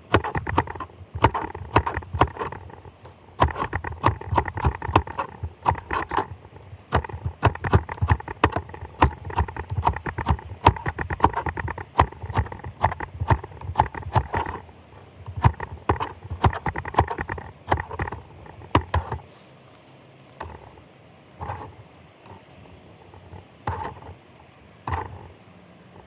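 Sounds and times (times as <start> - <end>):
rapid clattering knocks: 0.0 - 14.6, 15.3 - 19.2.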